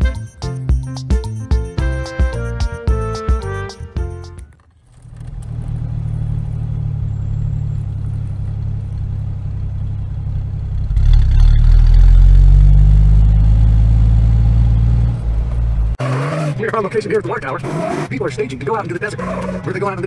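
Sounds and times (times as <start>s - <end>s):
vehicle engine running: 4.6s - 20.0s.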